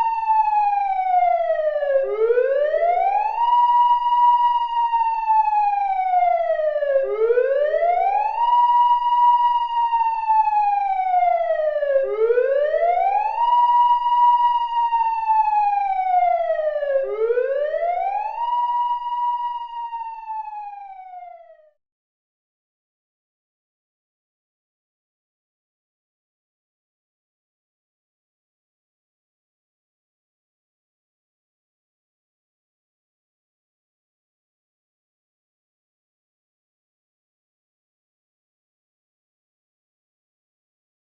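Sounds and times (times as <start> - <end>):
siren slow wail: 0.0 - 21.8.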